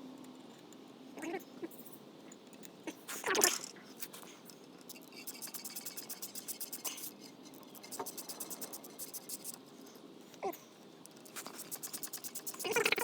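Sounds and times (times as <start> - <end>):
ratchet wrench clicking: 4.9 - 7.1, 7.8 - 9.6, 11.2 - 13.0.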